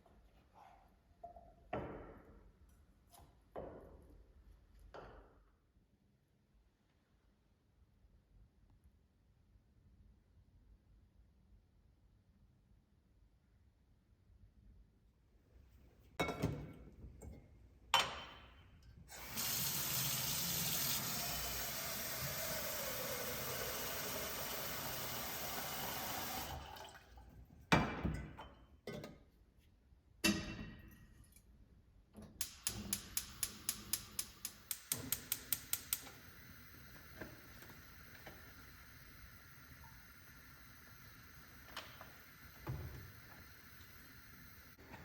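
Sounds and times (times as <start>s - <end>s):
tap water running: 19.1s - 27.4s, 32.4s - 45.0s.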